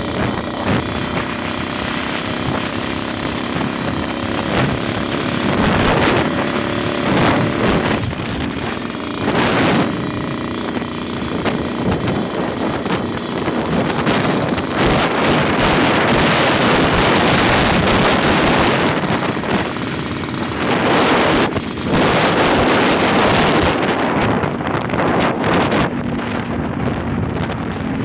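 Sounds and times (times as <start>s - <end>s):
two-stroke motorcycle engine running: 0.0s - 28.0s.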